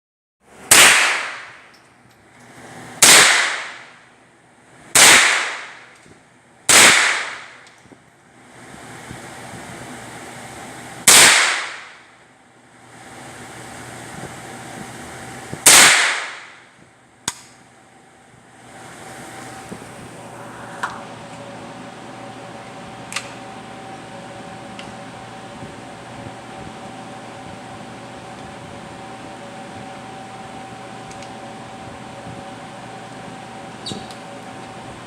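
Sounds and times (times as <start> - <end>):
indoor gunshots with echo: 0.7 - 1.7, 3.0 - 4.0, 4.9 - 6.0, 6.7 - 7.6, 11.0 - 12.0, 15.6 - 16.6.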